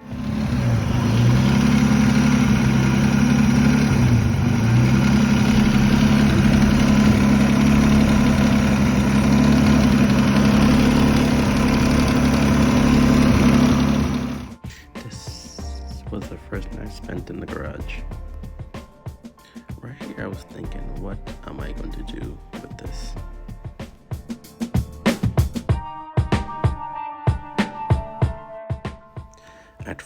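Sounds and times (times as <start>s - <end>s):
car engine idling: 0.0s - 14.6s.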